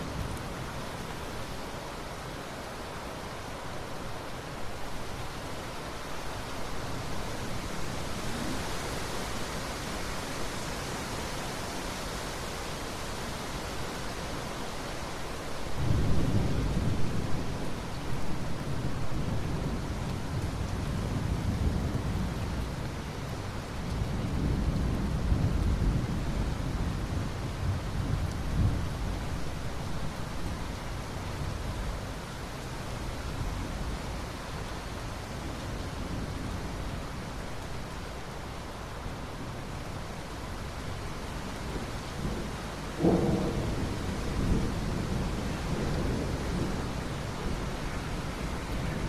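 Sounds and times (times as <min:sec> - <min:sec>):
steady rain hiss: 0:00.0 - 0:49.0
low rolling thunder: 0:41.6 - 0:49.0.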